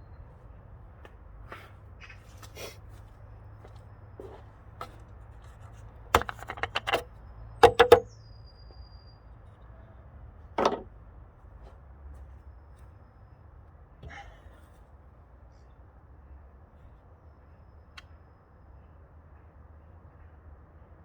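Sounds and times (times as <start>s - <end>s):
hard objects clicking and knocking: 6.1s - 8.1s, 10.6s - 10.9s.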